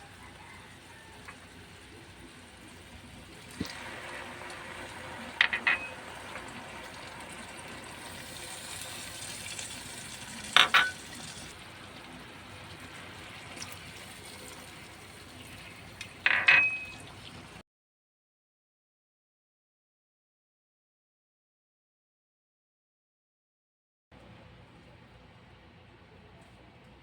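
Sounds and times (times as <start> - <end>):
food sizzling in a frying pan: 0.0 - 17.6
metal utensil scraping a pan: 5.4 - 6.1.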